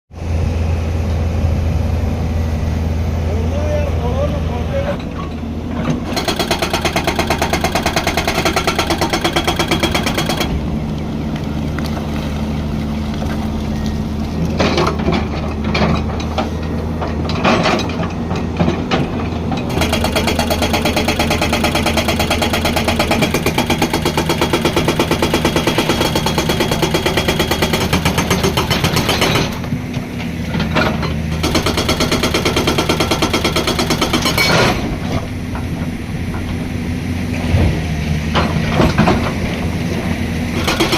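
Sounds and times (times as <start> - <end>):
diesel engine running: 0.1 - 40.9
hydraulic rock breaker hammering: 5.0 - 10.6, 17.1 - 36.7, 40.5 - 40.9.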